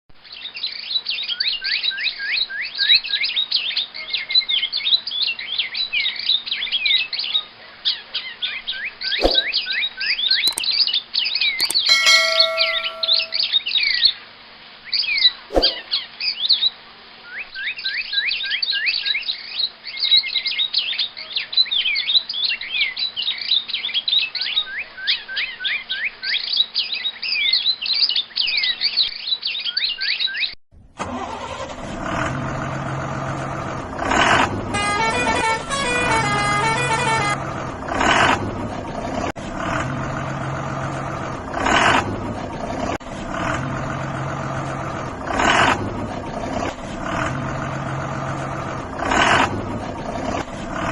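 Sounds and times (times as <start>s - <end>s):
birds chirping rapidly: 0.2s - 13.5s
vehicle running: 9.2s - 9.6s, 11.6s - 13.4s, 31.0s - 50.9s
short horn blasts: 11.6s - 13.4s, 34.4s - 37.8s
warbling tune-like tone: 11.6s - 13.4s.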